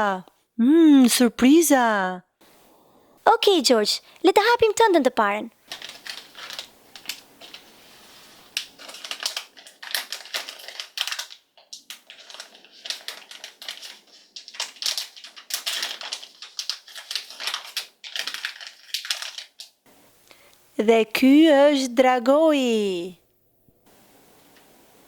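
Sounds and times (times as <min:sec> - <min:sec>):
plastic bag crinkling: 0:05.6 - 0:19.8.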